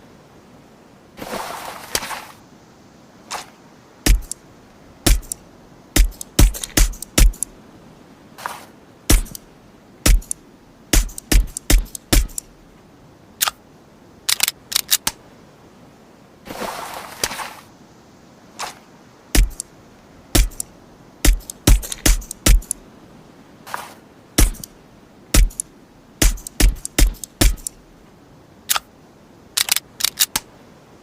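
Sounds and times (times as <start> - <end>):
hiss: 1.2 - 4.4, 5.1 - 5.4, 8.4 - 9.4, 10.0 - 10.4, 18.5 - 19.7, 20.4 - 22.8, 23.6 - 24.8, 25.4 - 27.7.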